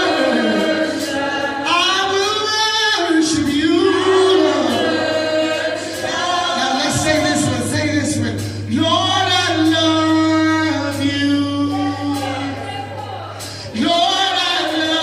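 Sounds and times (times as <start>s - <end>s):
voices singing held notes: 0.0s - 15.0s
low accompaniment tone: 6.0s - 15.0s.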